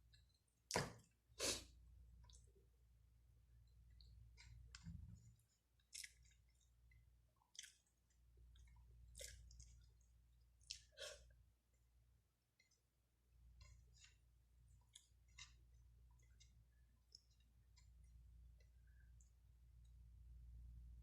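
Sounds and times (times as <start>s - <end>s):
faint low hum: 0.0s - 21.0s
wet chewing clicks and smacks: 3.7s - 11.0s, 13.5s - 20.0s.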